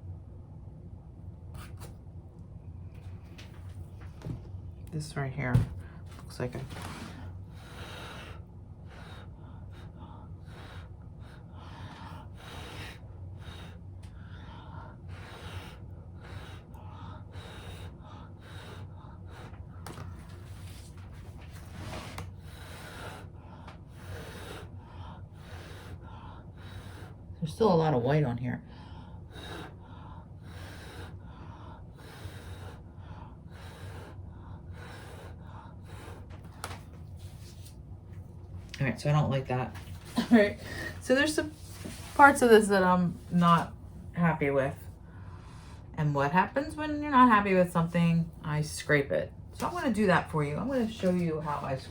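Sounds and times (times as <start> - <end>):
steady low hum: 0.0 - 51.9
person blowing strong breaths: 21.7 - 27.2, 28.8 - 36.6.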